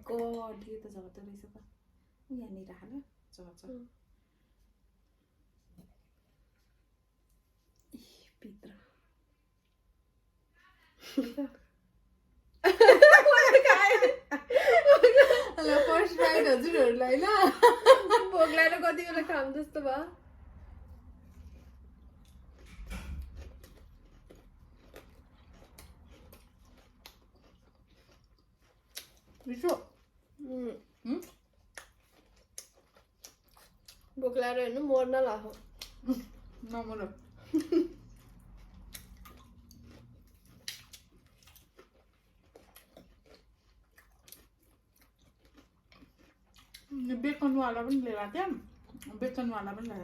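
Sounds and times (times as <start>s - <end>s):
person chewing food: 4.2s - 8.0s, 20.4s - 34.2s, 35.4s - 50.0s
wet mouth clicks: 38.3s - 41.7s.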